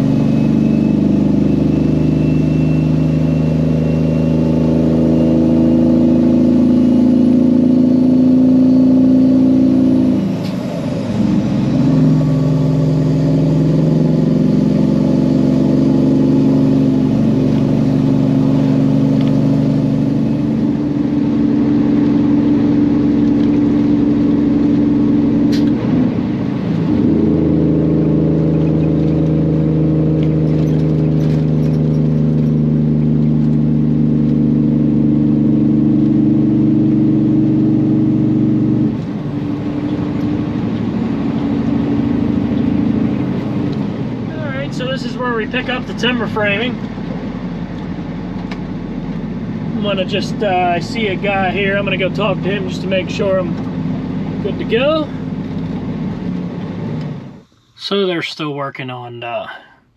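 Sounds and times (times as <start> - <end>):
truck diesel engine under load: 0.0 - 59.9
truck gear shifts: 17.3 - 20.6, 25.4 - 26.0, 28.0 - 34.5, 46.0 - 49.7, 53.5 - 57.8.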